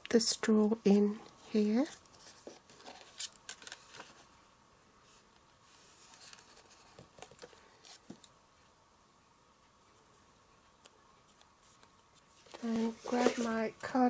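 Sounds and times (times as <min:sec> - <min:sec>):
soft paper rustle: 0:00.8 - 0:04.4, 0:05.0 - 0:08.4, 0:10.7 - 0:14.0.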